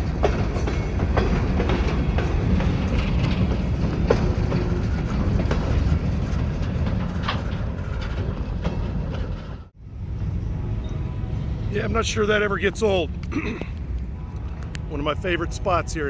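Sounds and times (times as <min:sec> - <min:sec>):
train wheels rumbling on rails: 0:00.0 - 0:16.0
clicks and clanks: 0:00.6 - 0:09.6.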